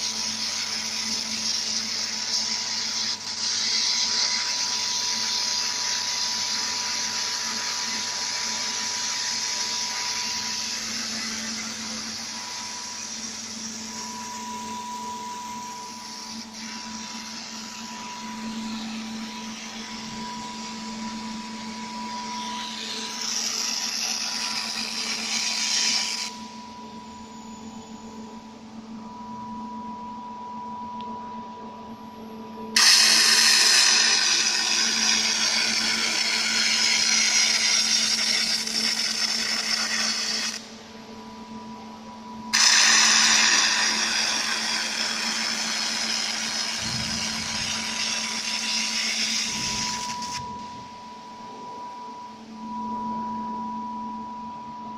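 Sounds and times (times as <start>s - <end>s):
machine hum: 0.0s - 54.9s
laser welding hiss: 22.6s - 26.3s, 32.8s - 40.6s, 42.5s - 50.4s.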